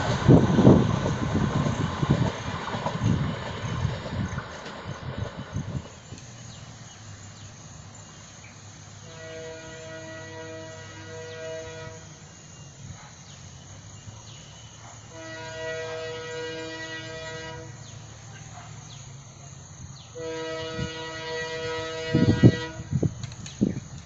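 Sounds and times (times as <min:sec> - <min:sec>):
locomotive engine rumble: 0:00.0 - 0:24.0
locomotive air horn blasts: 0:09.0 - 0:12.2, 0:15.1 - 0:18.0, 0:20.1 - 0:23.1.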